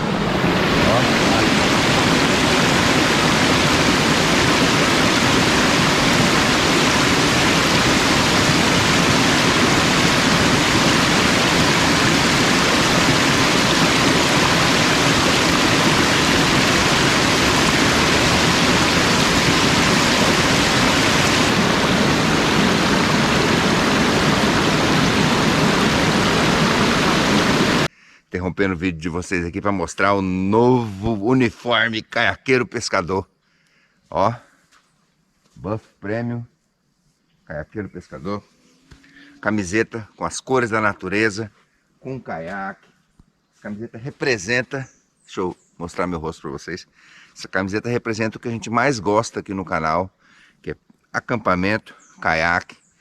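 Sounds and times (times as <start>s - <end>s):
waterfall rushing and splashing: 0.0s - 27.9s.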